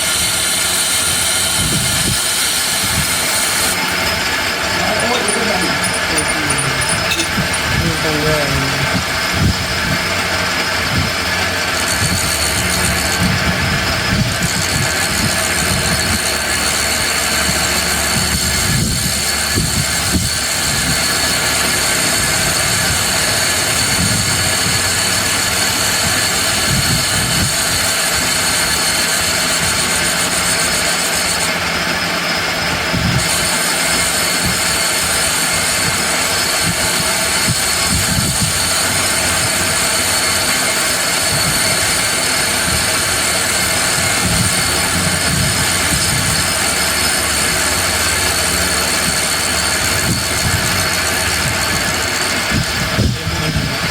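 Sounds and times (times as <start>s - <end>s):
lathe running: 0.0s - 53.9s
high-pitched whining tones: 2.9s - 13.6s, 37.5s - 53.9s.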